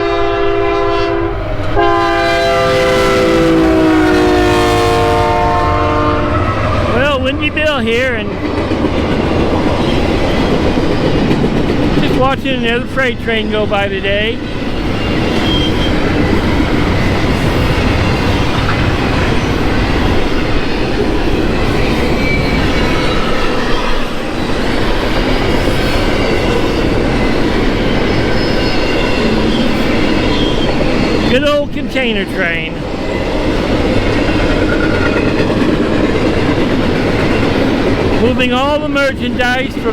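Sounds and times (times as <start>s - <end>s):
locomotive air horn blasts: 0.0s - 6.8s
freight train rumbling: 0.0s - 39.9s
high wheel squeals: 14.4s - 20.9s, 21.5s - 25.0s, 25.7s - 31.6s.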